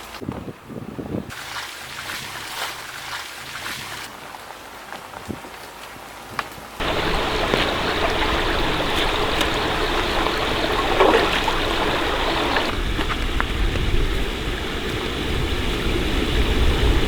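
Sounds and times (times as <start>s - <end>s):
stream water rushing: 6.8s - 16.9s.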